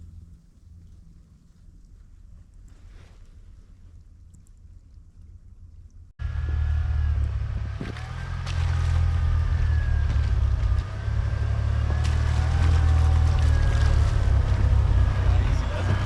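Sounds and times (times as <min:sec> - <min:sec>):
truck engine droning: 0:06.2 - 0:16.0.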